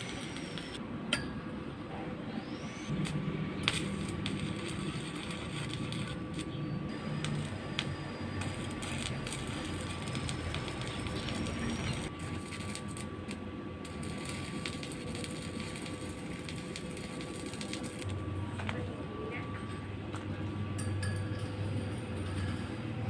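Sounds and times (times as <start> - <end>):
welding arc crackling: 0.0 - 0.8, 2.9 - 18.2
faint steady whine: 0.0 - 22.7.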